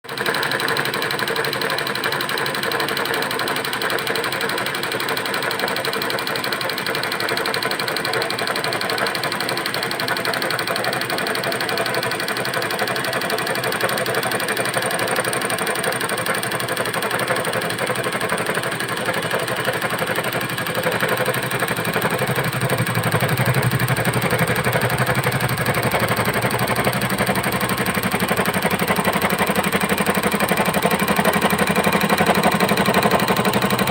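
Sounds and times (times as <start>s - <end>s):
embroidery machine stitching: 12.9s - 33.9s.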